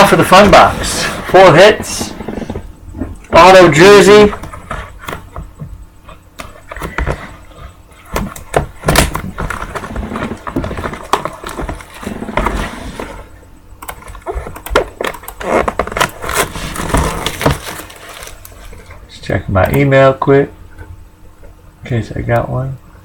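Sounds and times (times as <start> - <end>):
plastic wrap crinkling: 14.2 - 19.0.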